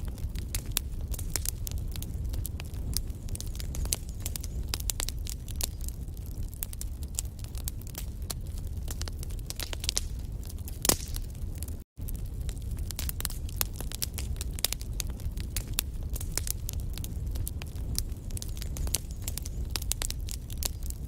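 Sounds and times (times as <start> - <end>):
low rumble of flame: 0.0 - 21.0
wood fire crackling and popping: 0.0 - 21.0.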